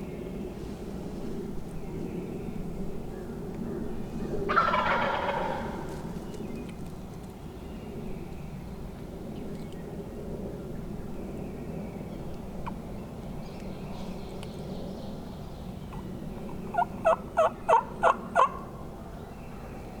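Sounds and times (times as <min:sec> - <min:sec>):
turkey yelps: 0:04.5 - 0:05.9, 0:15.9 - 0:18.7.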